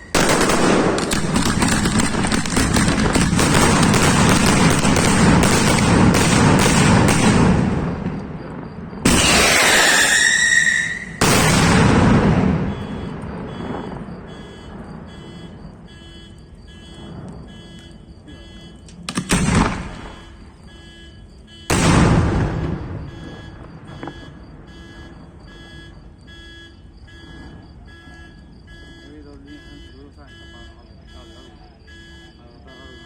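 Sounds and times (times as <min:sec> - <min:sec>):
fireworks banging: 0:00.0 - 0:31.5
electronic alarm beeping: 0:12.6 - 0:19.1, 0:20.0 - 0:21.8, 0:22.4 - 0:33.0.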